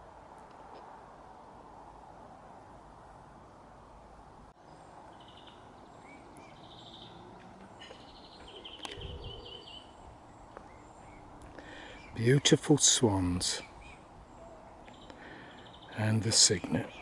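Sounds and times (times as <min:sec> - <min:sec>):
songbird trilled chirps: 0:04.6 - 0:12.6, 0:13.6 - 0:17.0.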